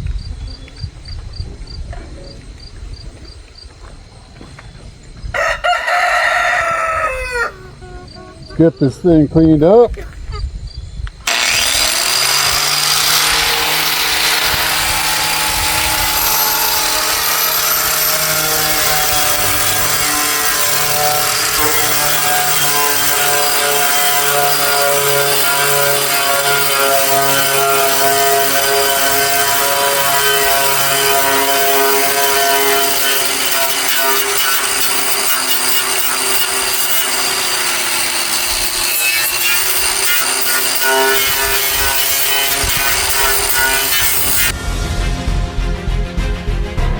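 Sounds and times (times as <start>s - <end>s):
power tool grinding metal: 11.2s - 44.6s.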